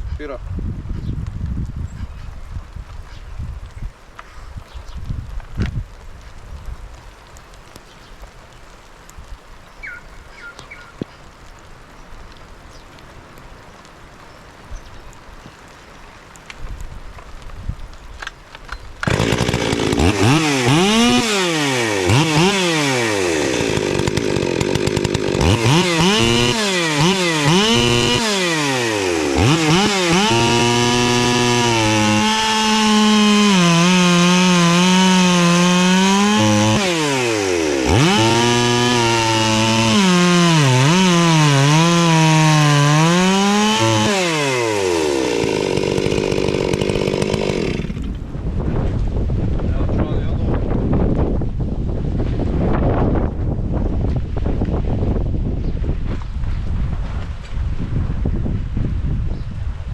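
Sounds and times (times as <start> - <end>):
chainsaw revving and cutting wood: 19.0 - 48.3.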